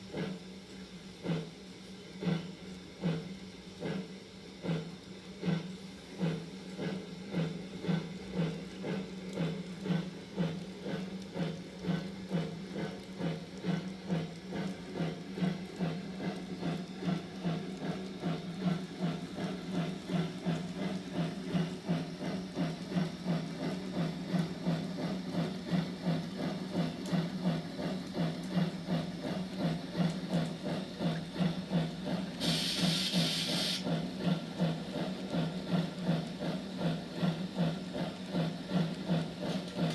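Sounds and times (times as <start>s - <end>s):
steam locomotive chuffing: 0.0s - 39.9s
steam hiss: 32.4s - 33.9s.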